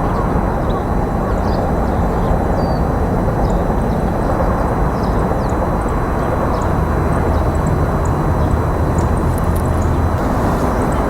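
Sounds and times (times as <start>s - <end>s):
low rushing outdoor noise: 0.0s - 11.0s.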